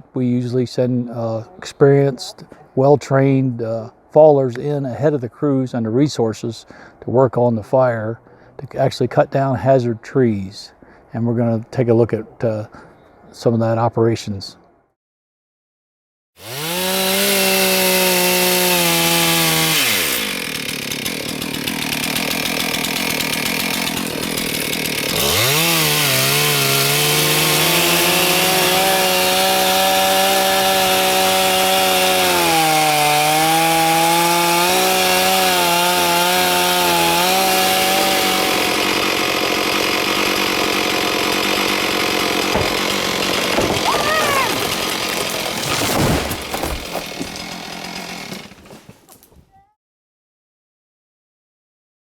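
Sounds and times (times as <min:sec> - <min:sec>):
chainsaw cutting a tree: 0:16.4 - 0:49.1.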